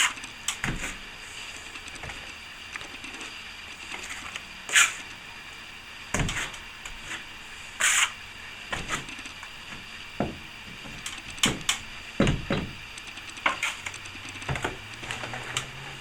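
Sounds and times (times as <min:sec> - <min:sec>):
plastering tool scraping plaster: 0:07.8 - 0:08.2.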